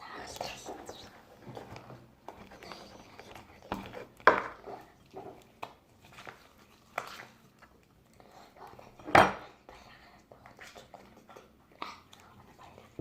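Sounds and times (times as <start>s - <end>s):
hard objects knocking and clinking: 4.2s - 4.6s.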